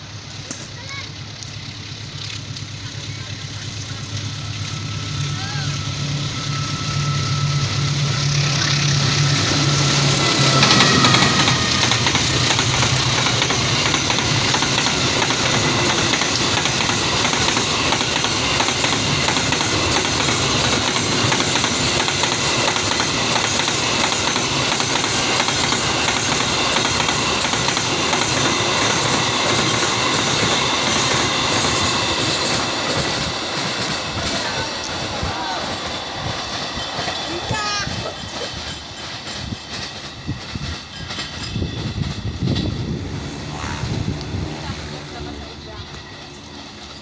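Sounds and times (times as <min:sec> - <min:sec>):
train wheels rumbling on rails: 0:00.0 - 0:47.0
high ringing tones: 0:04.1 - 0:33.2.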